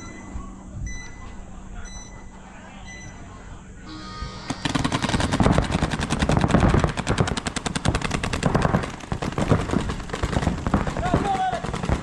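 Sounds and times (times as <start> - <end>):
paintball markers firing: 4.5 - 12.0.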